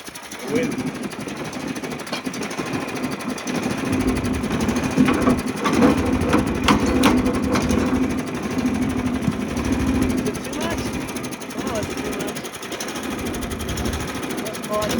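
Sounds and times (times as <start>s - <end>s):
sawmill running: 0.0s - 14.9s
sharp knocks and ticks: 1.6s - 14.9s.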